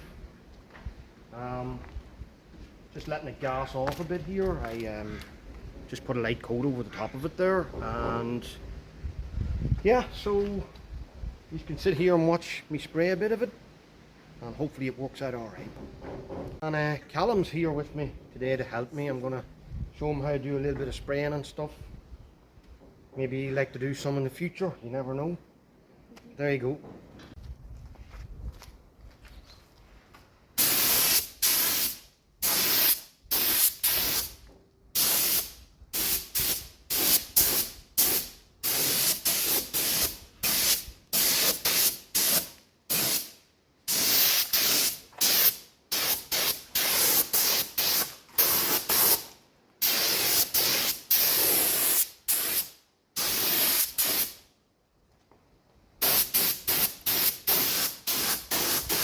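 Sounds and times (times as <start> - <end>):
spray paint hissing: 30.6 - 54.4, 56.0 - 59.0.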